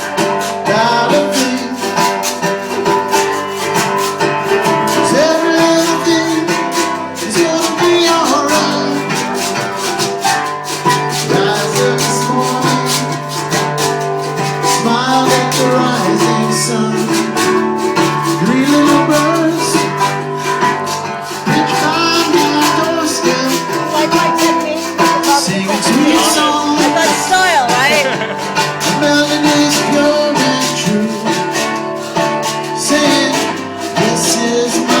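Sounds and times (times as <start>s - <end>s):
acoustic guitar reggae music: 0.0s - 35.0s
shaker rhythm: 0.0s - 35.0s.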